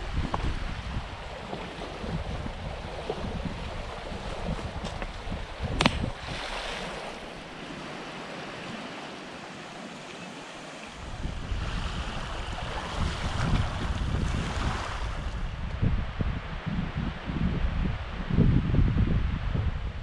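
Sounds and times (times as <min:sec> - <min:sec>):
wind buffeting microphone: 0:00.0 - 0:08.8, 0:10.4 - 0:20.0
sharp click: 0:05.8 - 0:06.1.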